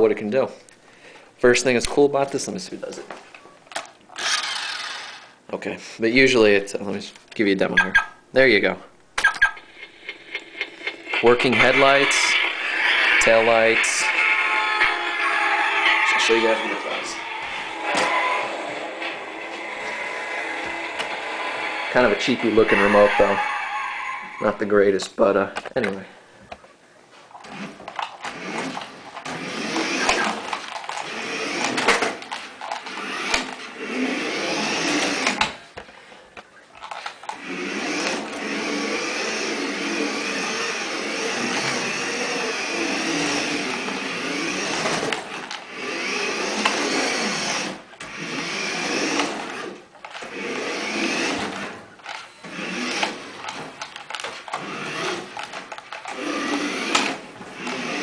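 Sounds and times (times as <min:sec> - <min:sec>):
toy car electric motor whining: 0:04.2 - 0:05.4, 0:09.8 - 0:24.5, 0:27.5 - 0:35.4, 0:36.9 - 0:58.0.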